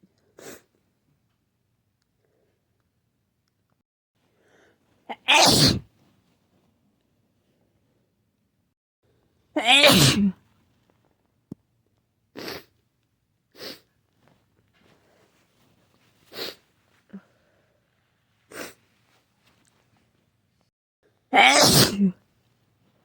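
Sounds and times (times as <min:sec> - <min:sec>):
person sneezing: 0:05.1 - 0:05.8, 0:09.6 - 0:10.4, 0:18.5 - 0:18.8, 0:21.4 - 0:22.2.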